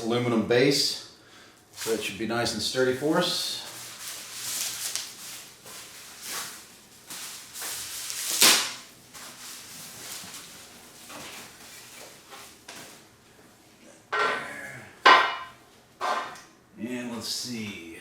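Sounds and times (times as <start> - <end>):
packaging rustling: 3.6 - 13.0.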